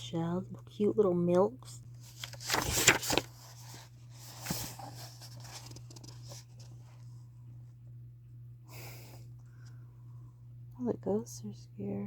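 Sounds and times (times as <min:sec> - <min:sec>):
low electrical hum: 0:00.0 - 0:12.0
book handling noises: 0:01.9 - 0:07.1.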